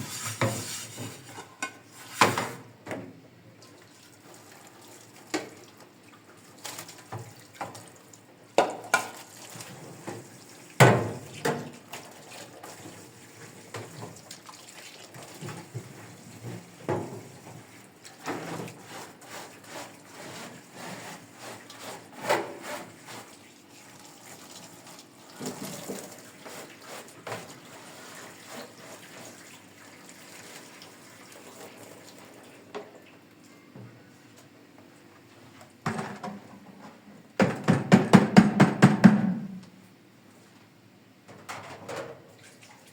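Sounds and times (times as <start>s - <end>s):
water running in sink: 11.8s - 32.9s.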